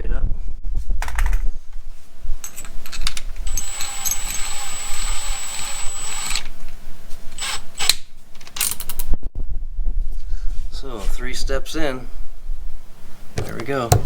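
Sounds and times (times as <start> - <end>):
power drill whining through metal: 3.3 - 6.6, 7.3 - 8.0.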